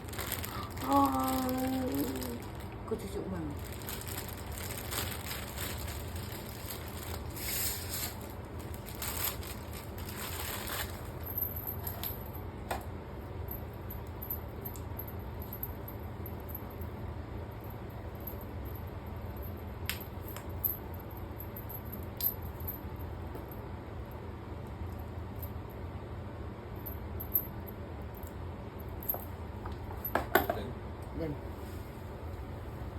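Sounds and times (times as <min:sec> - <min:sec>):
packaging rustling: 0:00.0 - 0:02.8, 0:03.5 - 0:11.4
steady low hum: 0:00.0 - 0:32.9.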